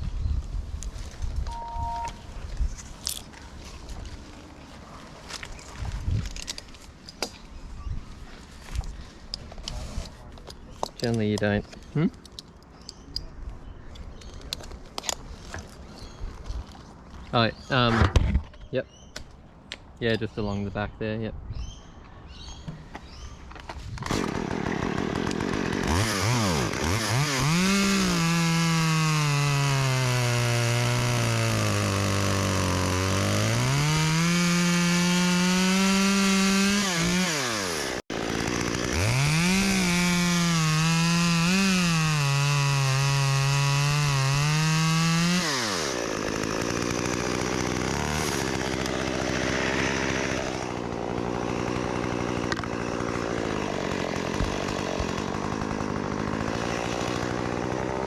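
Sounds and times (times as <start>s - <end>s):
chainsaw cutting wood: 23.9s - 58.0s.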